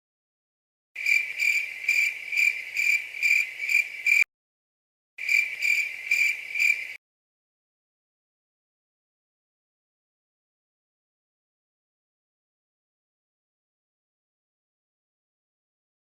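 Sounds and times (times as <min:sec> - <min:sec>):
cricket chirping: 0:01.0 - 0:04.2, 0:05.2 - 0:07.0.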